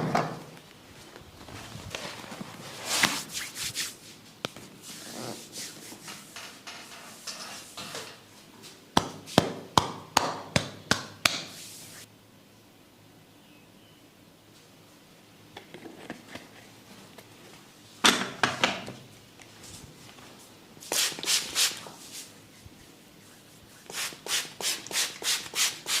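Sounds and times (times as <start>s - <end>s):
hands rubbing head: 2.7s - 7.8s, 20.8s - 26.0s.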